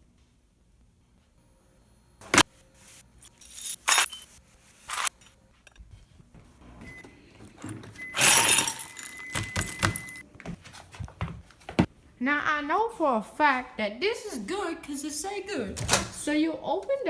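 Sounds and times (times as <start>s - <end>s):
broken glass clinking: 3.2s - 4.3s, 8.2s - 10.2s.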